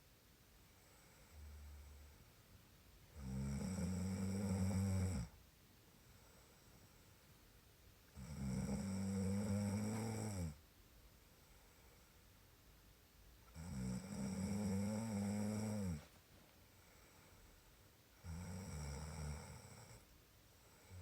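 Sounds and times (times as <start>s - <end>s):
person snoring: 8.2s - 10.6s, 13.6s - 16.1s.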